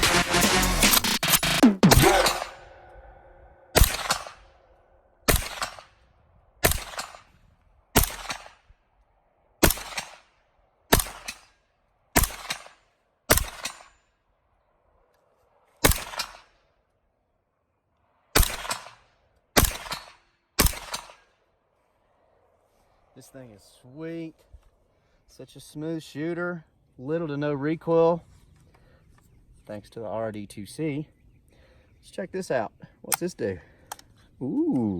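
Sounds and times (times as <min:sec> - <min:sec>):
pistol shots with echo: 0:01.8 - 0:04.6, 0:05.2 - 0:06.0, 0:06.6 - 0:07.3, 0:07.9 - 0:08.6, 0:09.6 - 0:11.5, 0:12.2 - 0:13.9, 0:15.8 - 0:16.4, 0:18.4 - 0:19.0, 0:19.6 - 0:21.2.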